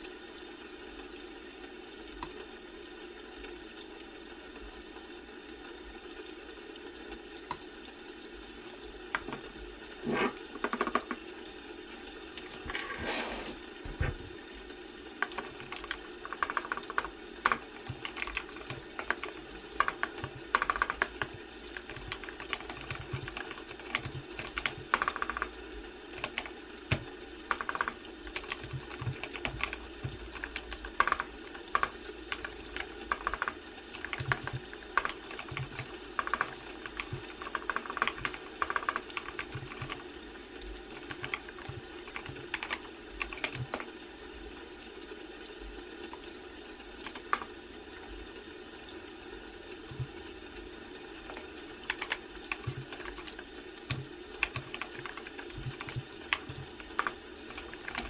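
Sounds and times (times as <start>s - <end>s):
computer keyboard typing: 9.1s - 9.5s, 10.1s - 11.3s, 15.2s - 44.0s, 47.0s - 47.6s, 49.8s - 58.0s.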